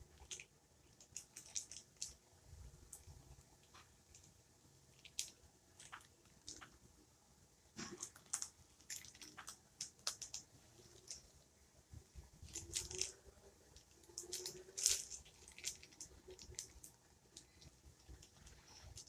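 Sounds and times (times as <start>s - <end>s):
plastic packaging crinkling: 0.2s - 2.2s, 7.8s - 11.2s, 12.4s - 13.2s, 13.8s - 19.0s.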